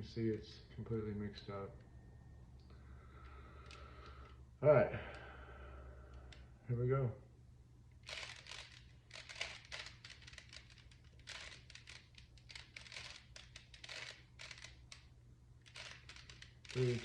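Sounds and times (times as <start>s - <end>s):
plastic puzzle cube clicking: 8.0s - 15.0s, 15.6s - 17.0s.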